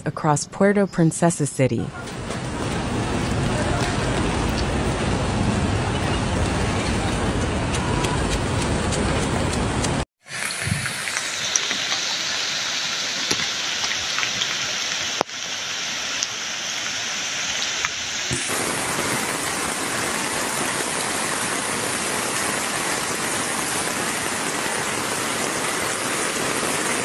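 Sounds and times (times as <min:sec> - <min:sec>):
heavy rain hissing: 0:01.9 - 0:27.0
raindrops ticking on surfaces: 0:01.9 - 0:27.0.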